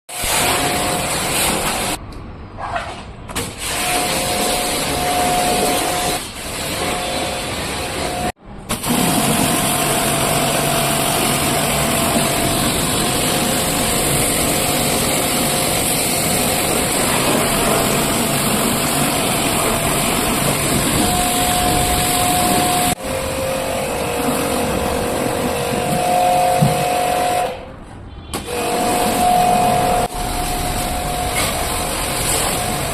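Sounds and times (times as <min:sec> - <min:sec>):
pressure washer spraying water: 0:00.1 - 0:02.0, 0:03.4 - 0:27.6, 0:28.4 - 0:32.9
pump motor whining: 0:03.8 - 0:27.6, 0:28.4 - 0:32.9.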